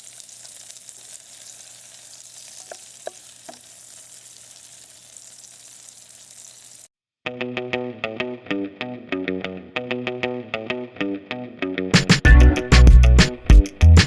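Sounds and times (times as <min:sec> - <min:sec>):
potatoes and sausage sizzling in a pan: 0:00.0 - 0:06.9.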